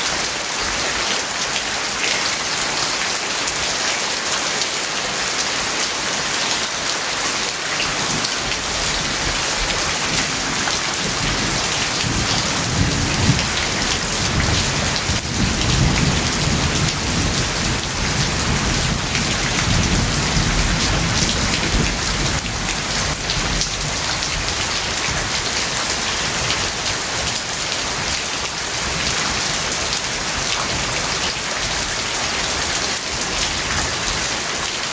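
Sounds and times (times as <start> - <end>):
rain pattering on surfaces: 0.0 - 34.9
low rumble of thunder: 8.2 - 25.5.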